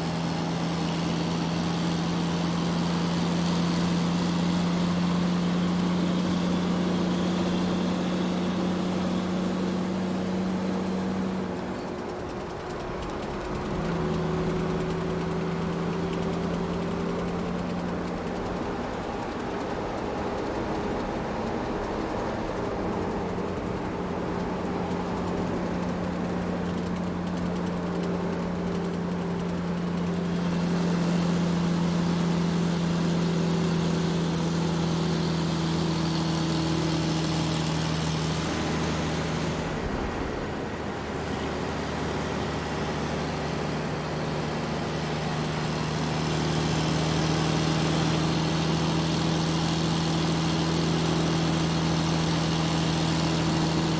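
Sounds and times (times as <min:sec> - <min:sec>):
road noise: 0:00.0 - 0:53.9
truck engine driving: 0:00.0 - 0:53.9.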